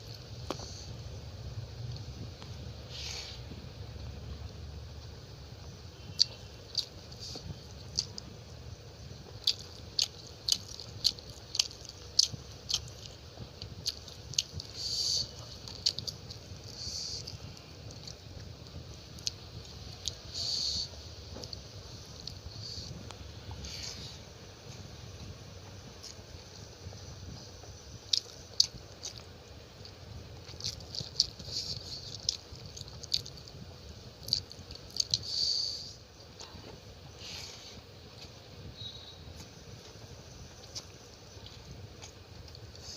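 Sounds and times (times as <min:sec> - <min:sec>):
person chewing food: 0:05.6 - 0:24.3, 0:25.6 - 0:35.4, 0:39.4 - 0:42.9.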